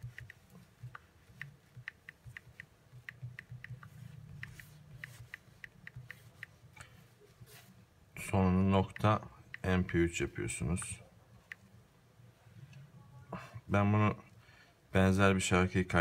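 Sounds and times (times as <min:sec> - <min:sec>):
phone keyboard clicks: 0:00.0 - 0:06.9
faint low hum: 0:00.0 - 0:16.0.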